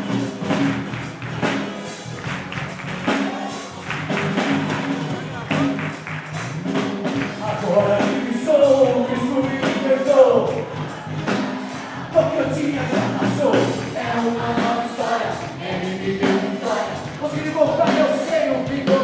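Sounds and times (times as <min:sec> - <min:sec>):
band playing: 0:00.0 - 0:19.0
steady drum beat: 0:00.0 - 0:19.0
person singing: 0:07.3 - 0:19.0.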